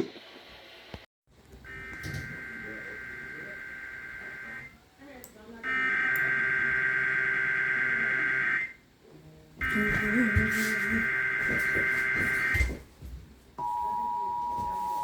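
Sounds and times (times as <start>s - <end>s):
two-tone attention signal: 1.7s - 4.7s, 9.6s - 12.7s.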